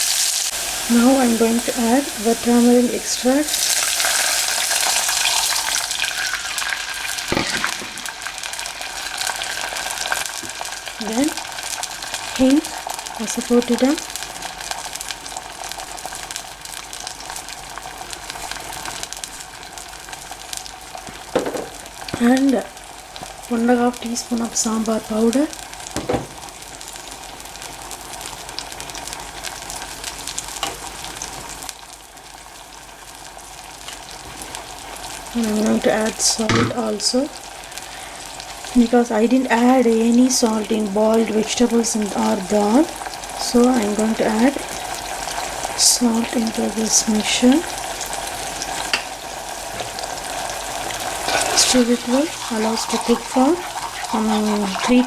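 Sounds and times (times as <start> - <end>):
liquid sizzling in hot oil: 0.0 - 55.0
dull knock: 26.0 - 26.4.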